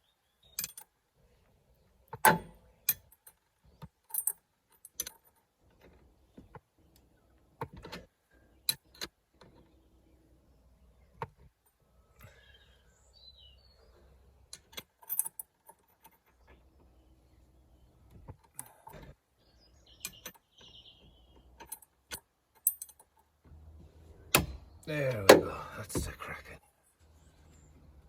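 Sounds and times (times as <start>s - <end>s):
bird chirping: 0.0s - 2.1s, 8.2s - 14.8s, 16.0s - 22.0s, 23.5s - 28.0s
metallic clinks and clicks: 21.6s - 23.2s.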